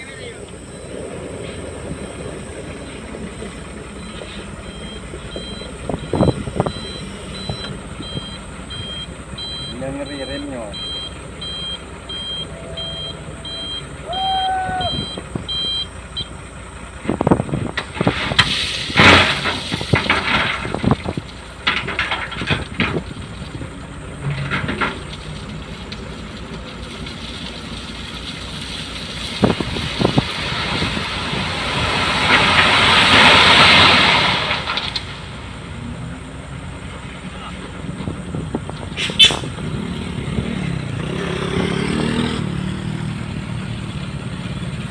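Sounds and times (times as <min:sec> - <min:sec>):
reversing alarm beeping: 0:03.9 - 0:16.4.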